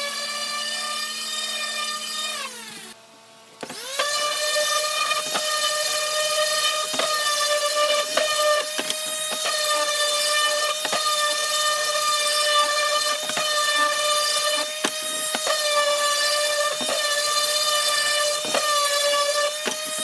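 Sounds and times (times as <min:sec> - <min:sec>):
electric sander whining: 0:03.6 - 0:20.0
sander knocking on wood: 0:06.6 - 0:11.3, 0:12.6 - 0:20.0.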